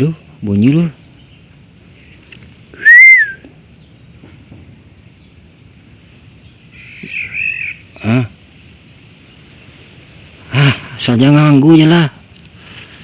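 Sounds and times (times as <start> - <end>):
bird whistled call: 2.0 - 3.5, 6.7 - 7.8
rough animal call: 2.0 - 3.6, 6.7 - 8.3.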